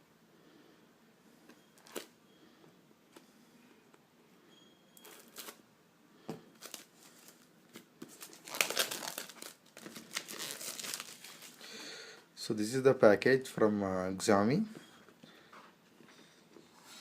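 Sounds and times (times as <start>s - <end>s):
packaging crinkling and crackling: 5.0s - 5.6s, 6.6s - 11.6s.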